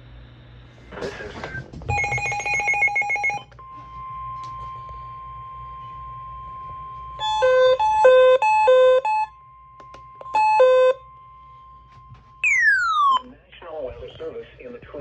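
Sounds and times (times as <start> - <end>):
steady high alarm tone: 1.9 - 13.2.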